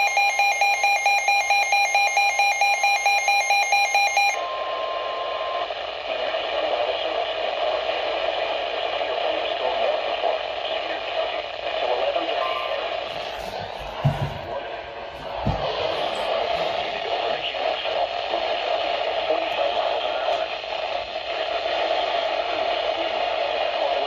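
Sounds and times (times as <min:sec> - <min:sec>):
weather radio pulsing alarm beep: 0:00.0 - 0:05.8, 0:12.4 - 0:14.6
radio static: 0:04.8 - 0:24.0.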